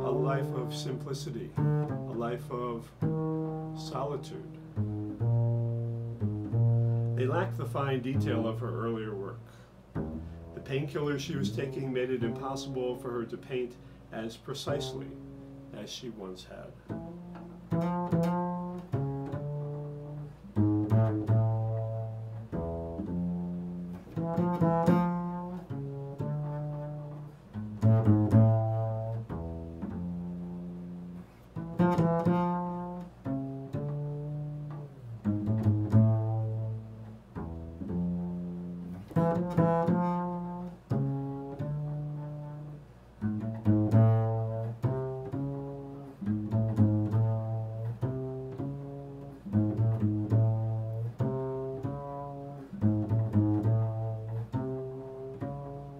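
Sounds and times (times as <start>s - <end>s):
low plucked instrumental notes: 0.0s - 55.9s.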